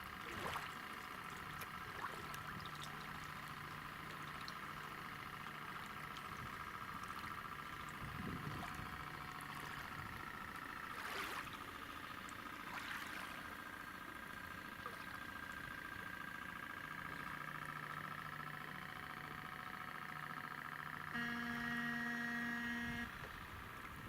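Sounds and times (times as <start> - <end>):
electric motor whining: 21.0 - 24.0.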